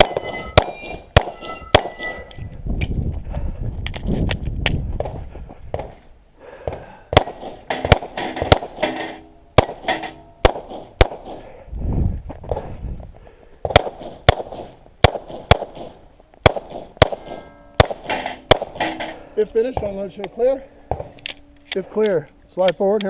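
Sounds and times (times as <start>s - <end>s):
pistol shots: 0.0s - 2.1s, 7.2s - 11.5s, 13.7s - 19.2s
short ringing tone: 0.0s - 2.5s.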